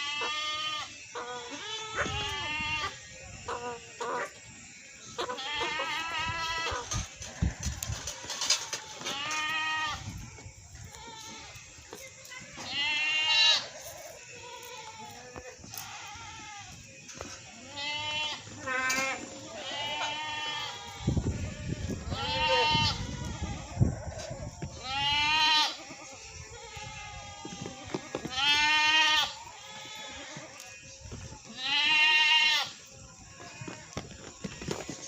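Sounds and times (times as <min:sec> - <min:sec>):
goats bleating: 0:00.0 - 0:04.4, 0:05.1 - 0:10.2, 0:10.8 - 0:35.0.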